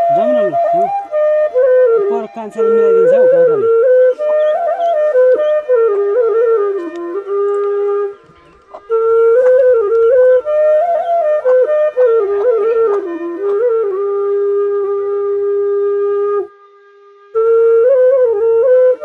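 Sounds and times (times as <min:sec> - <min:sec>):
bamboo flute melody: 0:00.0 - 0:19.0.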